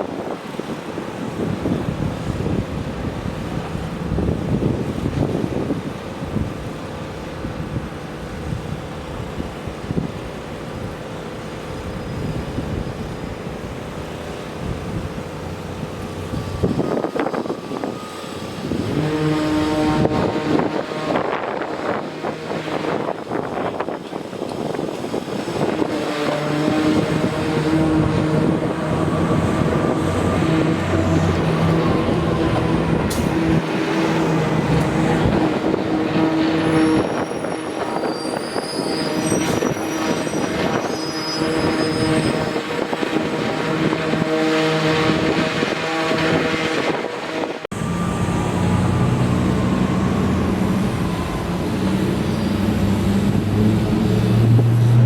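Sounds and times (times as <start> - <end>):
steady engine drone: 0.0 - 38.1, 42.3 - 55.0
vehicle engine rumble: 1.5 - 38.1, 47.6 - 55.0.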